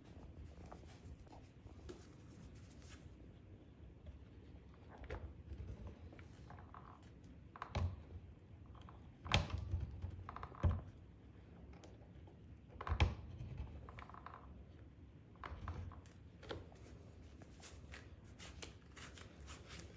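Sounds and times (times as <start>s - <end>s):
rustling handling noise: 16.6s - 19.9s.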